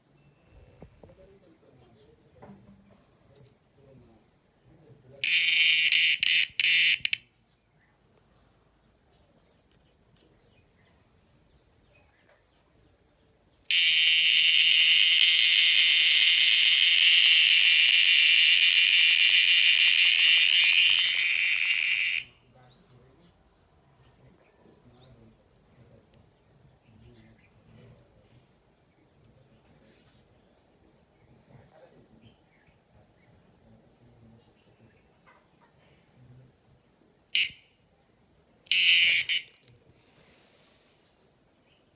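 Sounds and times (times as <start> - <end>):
insect loud high buzzing call: 5.2 - 7.2, 13.7 - 22.3, 37.4 - 37.6, 38.7 - 39.7.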